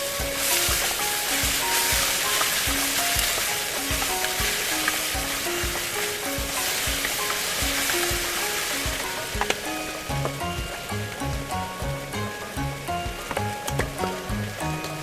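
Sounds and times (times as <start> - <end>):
background music with beat: 0.0 - 15.0
food sizzling in a pan: 0.0 - 15.0.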